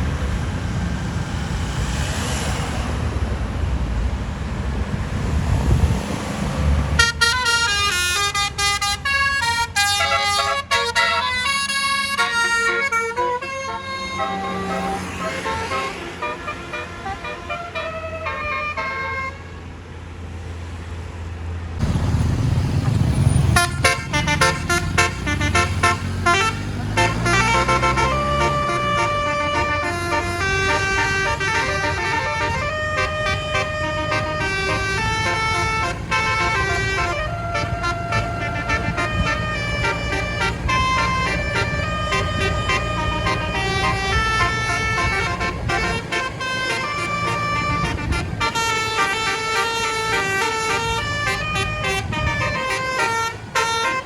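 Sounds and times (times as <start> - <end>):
bus engine rumble: 0.0 - 54.0
multi-note bus air horn: 7.0 - 19.7, 23.5 - 54.0.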